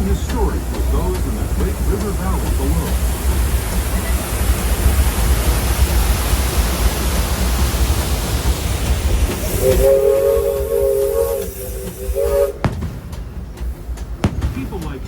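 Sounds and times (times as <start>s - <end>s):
steam train rumbling and hissing: 0.0s - 15.0s
steam whistle blast: 9.5s - 12.7s.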